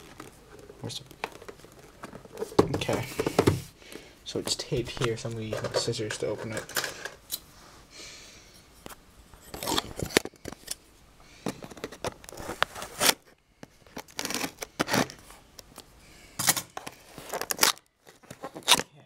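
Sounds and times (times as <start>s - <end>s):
scissors snipping packing tape: 13.9s - 15.2s, 16.4s - 17.8s.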